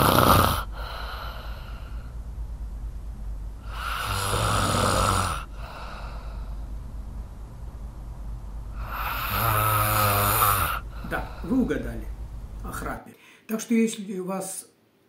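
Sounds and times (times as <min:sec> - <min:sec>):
person snoring: 0:00.0 - 0:02.1, 0:03.6 - 0:06.6, 0:08.8 - 0:11.8.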